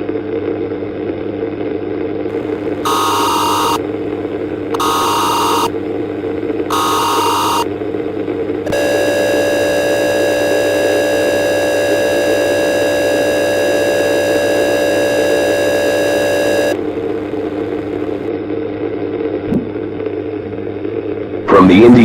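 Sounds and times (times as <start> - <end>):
static hiss and hum: 0.0 - 22.0
harsh buzzing alert tone: 2.3 - 18.3.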